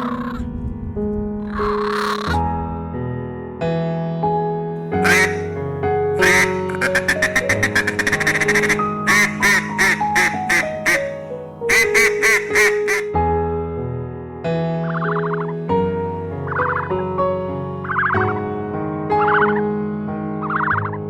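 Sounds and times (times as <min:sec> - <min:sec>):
animal sharp calls: 0:00.0 - 0:00.4, 0:01.4 - 0:02.4, 0:05.0 - 0:05.6, 0:06.2 - 0:13.2
background music: 0:00.0 - 0:21.0.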